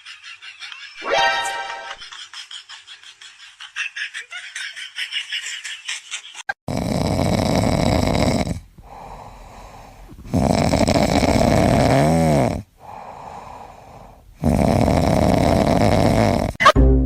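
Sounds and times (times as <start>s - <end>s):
loud snoring: 6.7s - 16.6s
quiet breathing: 8.4s - 14.4s
whistling snore: 14.4s - 16.6s.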